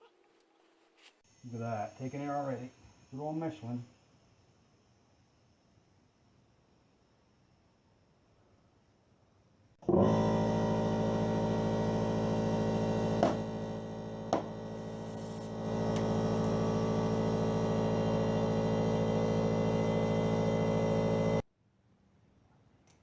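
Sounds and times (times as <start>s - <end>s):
air compressor motor humming: 9.8s - 21.4s.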